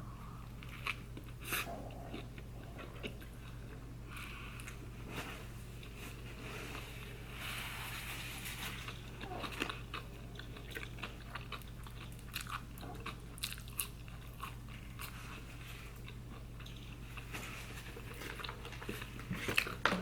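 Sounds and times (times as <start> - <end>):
person chewing with mouth clicks: 0.2 - 4.8, 8.7 - 19.9.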